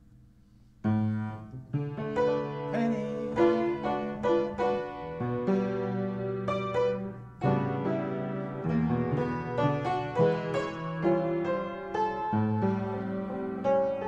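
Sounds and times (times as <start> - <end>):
piano playing jazz chords: 0.8 - 14.0.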